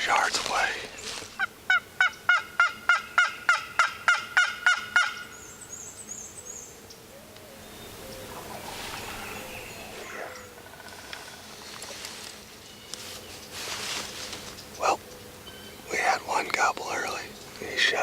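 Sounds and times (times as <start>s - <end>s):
turkey yelping: 1.7s - 5.3s.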